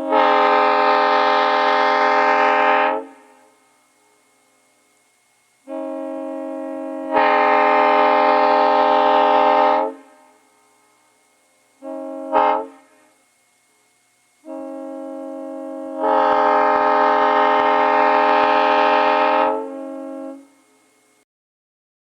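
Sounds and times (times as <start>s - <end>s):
locomotive air horn blasts: 0.0s - 3.8s, 5.6s - 10.5s, 11.8s - 13.2s, 14.4s - 20.9s.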